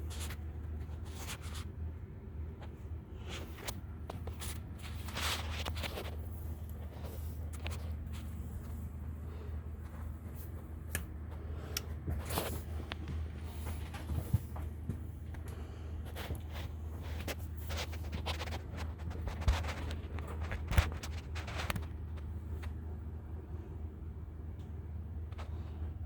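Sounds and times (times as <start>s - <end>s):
steady low hum: 0.0s - 26.0s
handling rustles and clicks: 2.6s - 9.1s, 9.7s - 22.8s
footsteps: 3.2s - 22.0s.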